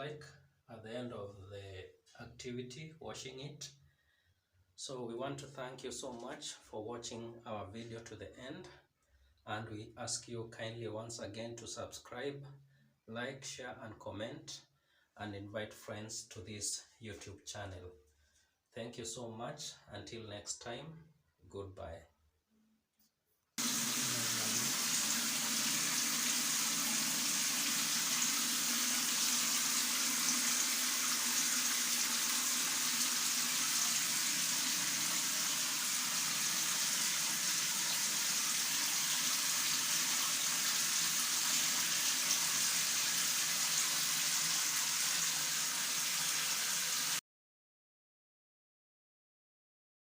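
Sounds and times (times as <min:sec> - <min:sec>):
shower water spraying: 0:23.6 - 0:47.2.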